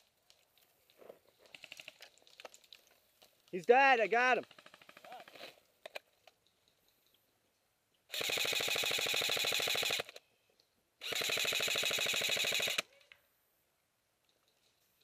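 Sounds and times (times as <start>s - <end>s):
airsoft rifle firing bursts: 8.1s - 10.2s, 11.0s - 12.9s.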